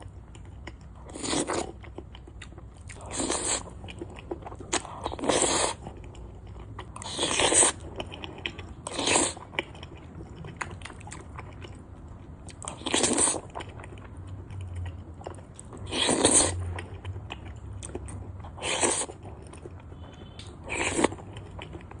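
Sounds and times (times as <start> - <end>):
soft wet chewing clicks: 0.0 - 22.0
loud eating mouthfuls: 2.8 - 6.0, 15.8 - 17.1.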